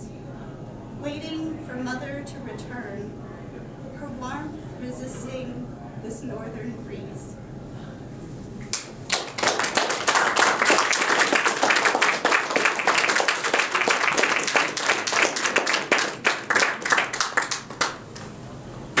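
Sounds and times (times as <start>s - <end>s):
audience applauding: 8.8s - 18.4s.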